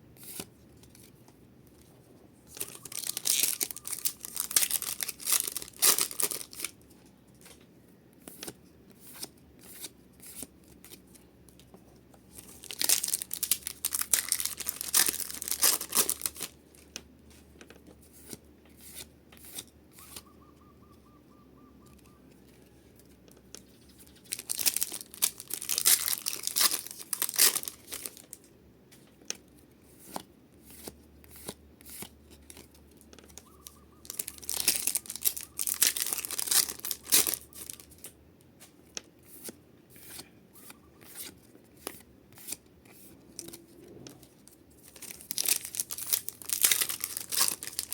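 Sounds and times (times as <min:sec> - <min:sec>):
foil wrappers tearing and crinkling: 0:02.5 - 0:06.8, 0:12.4 - 0:16.8, 0:24.2 - 0:28.4, 0:34.0 - 0:38.1, 0:44.4 - 0:47.9.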